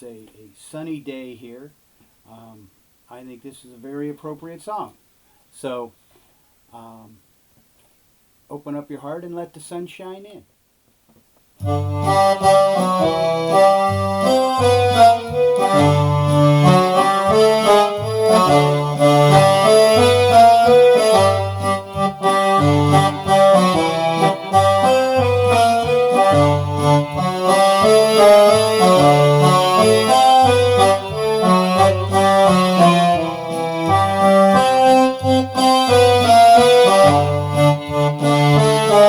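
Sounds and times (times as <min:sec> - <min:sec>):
accordion playing a tune: 0:11.6 - 0:39.0.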